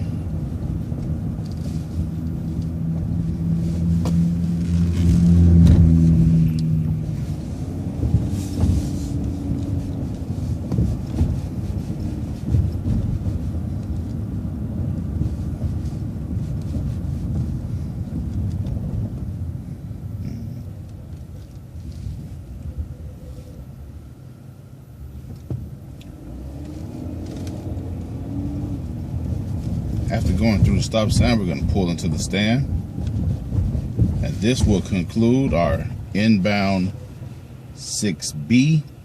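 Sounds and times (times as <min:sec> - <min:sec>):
bus engine and road rumble: 0:00.0 - 0:39.0.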